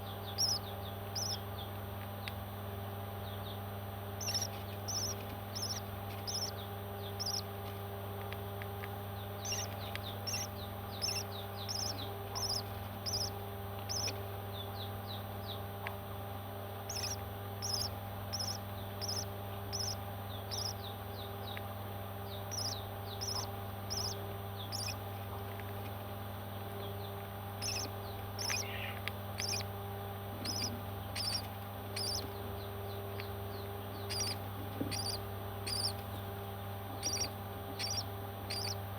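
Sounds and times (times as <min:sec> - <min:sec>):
low electrical hum: 0:00.0 - 0:38.9
baby parrots chirping: 0:00.2 - 0:01.4, 0:04.2 - 0:07.5, 0:09.4 - 0:14.2, 0:16.8 - 0:21.6, 0:22.3 - 0:25.1, 0:27.6 - 0:29.7, 0:30.4 - 0:36.1, 0:36.9 - 0:38.8.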